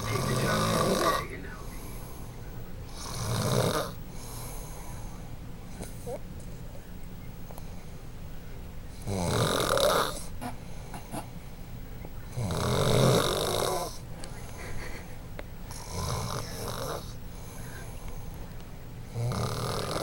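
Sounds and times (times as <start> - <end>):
person snoring: 0.0 - 1.3, 2.9 - 4.7, 9.0 - 10.3, 12.3 - 14.0, 15.7 - 17.2, 19.1 - 20.0
quiet breathing: 0.0 - 9.1, 9.7 - 20.0.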